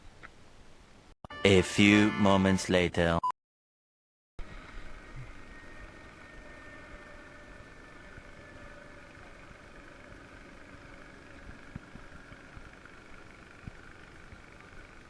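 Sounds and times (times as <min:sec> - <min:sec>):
faint engine hum: 0:04.4 - 0:15.0.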